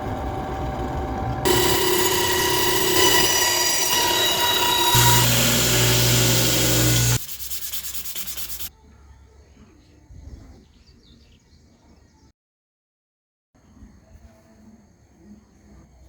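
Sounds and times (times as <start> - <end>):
motor hum: 0.0 - 8.7
rhythmic scraping: 0.0 - 8.7
abrasive grinding on knife blade: 1.5 - 8.7.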